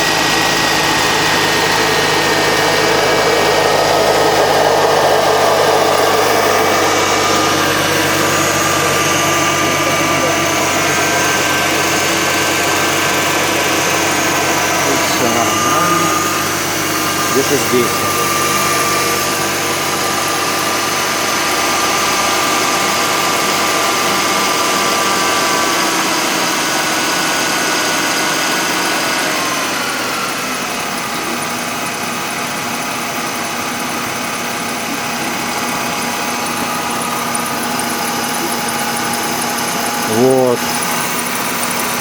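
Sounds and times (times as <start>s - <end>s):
car engine idling: 0.0s - 42.0s.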